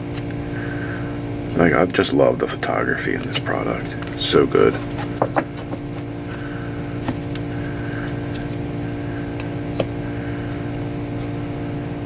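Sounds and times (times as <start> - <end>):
low mechanical hum: 0.0 - 12.0
trading cards clicking and rustling: 1.9 - 11.5.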